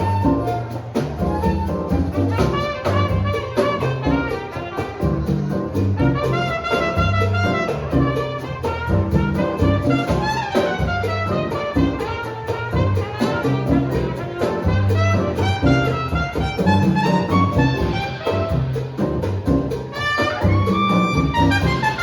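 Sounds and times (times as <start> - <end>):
bass: 0.0 - 22.0
percussion beat: 0.0 - 22.0
trumpet melody: 0.0 - 22.0.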